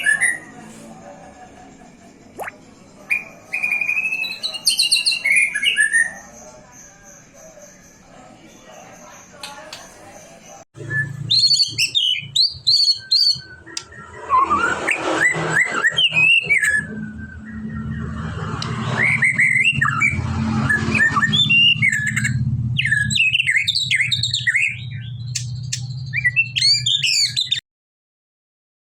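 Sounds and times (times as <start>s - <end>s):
songbird whistling and chattering: 2.4s - 7.9s, 10.8s - 27.6s.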